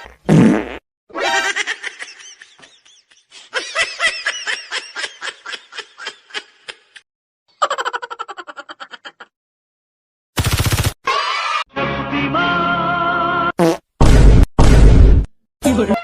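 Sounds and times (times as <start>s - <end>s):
high-pitched giggling laughter: 1.2s - 7.0s, 7.6s - 9.3s.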